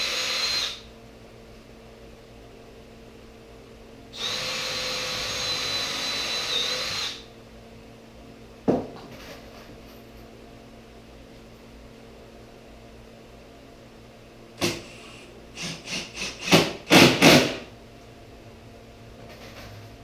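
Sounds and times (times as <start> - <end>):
cordless drill driving screw: 0.0 - 0.8, 4.2 - 7.2
steady background hum: 0.0 - 20.0
knock: 8.7 - 9.1.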